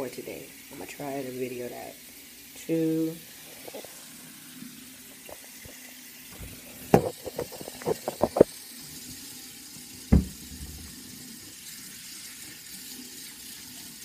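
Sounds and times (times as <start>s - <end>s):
faint steady hiss: 0.0s - 14.0s
heavy thump: 10.1s - 10.9s.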